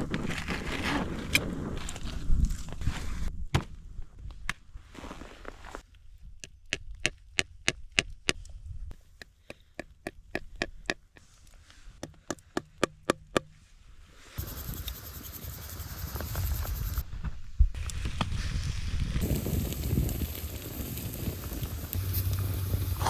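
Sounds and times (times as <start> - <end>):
steady hiss: 19.2 - 23.0.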